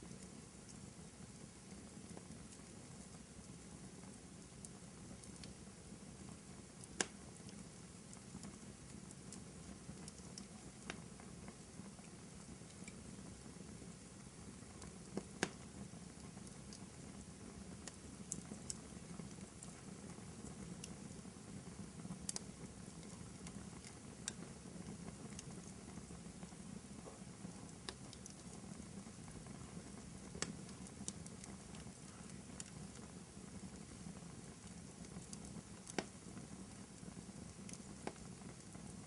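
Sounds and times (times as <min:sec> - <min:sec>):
wood fire crackling and popping: 0:00.0 - 0:39.0.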